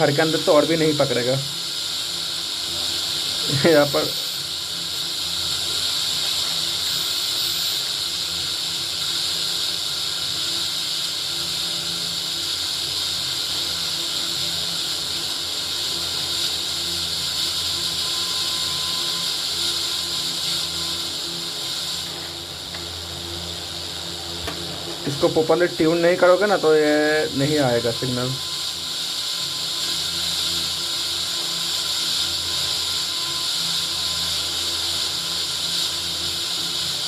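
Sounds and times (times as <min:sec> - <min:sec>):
radio static hiss: 0:00.0 - 0:01.6, 0:02.8 - 0:04.5, 0:24.3 - 0:28.6.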